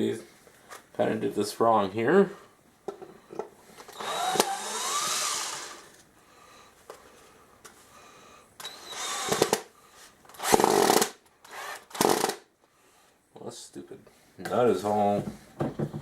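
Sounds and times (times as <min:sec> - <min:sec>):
cordless drill motor whine: 0:03.9 - 0:05.9, 0:08.6 - 0:09.6.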